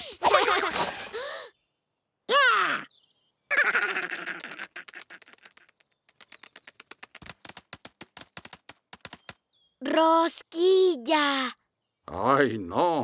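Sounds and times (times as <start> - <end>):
cartoon birds squawking: 3.5 - 5.7
quick sharp clicking taps: 4.0 - 9.4.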